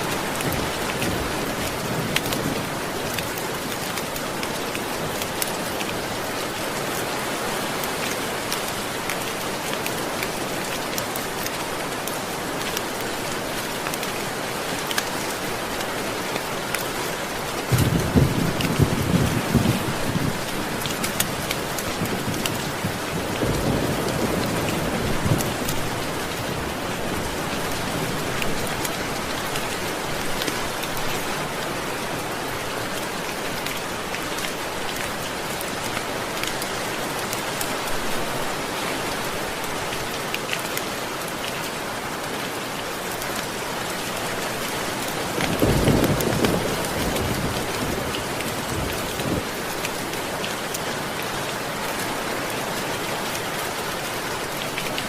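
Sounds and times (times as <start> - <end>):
heavy rain: 0.0 - 55.0
thunder rumbling: 17.7 - 20.4, 45.4 - 49.5.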